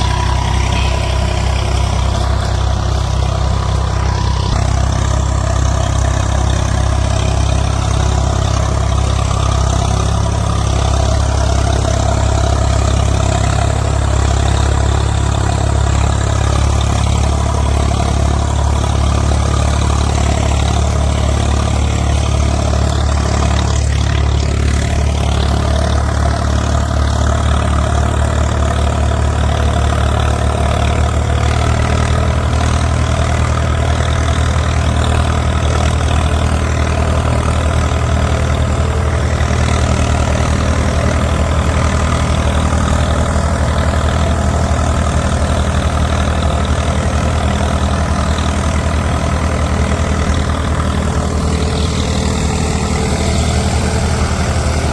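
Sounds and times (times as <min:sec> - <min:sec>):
diesel engine low rumble: 0:00.0 - 0:54.9.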